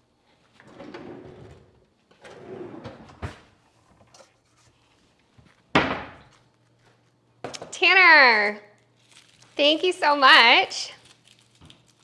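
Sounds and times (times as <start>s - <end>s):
drawer or cupboard shutting: 0.6s - 3.5s.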